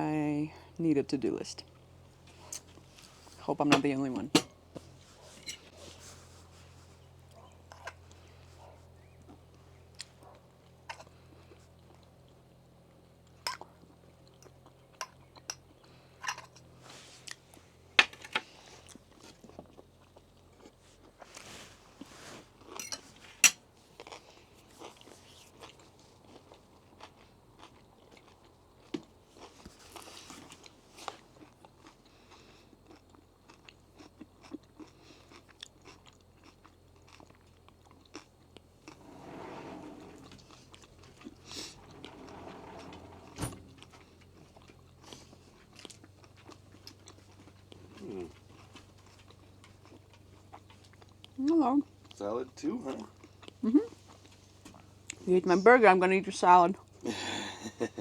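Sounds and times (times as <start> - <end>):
person chewing crunchy salad: 6.7 - 17.8, 18.4 - 39.0, 40.4 - 42.0, 43.8 - 52.2, 52.9 - 55.2.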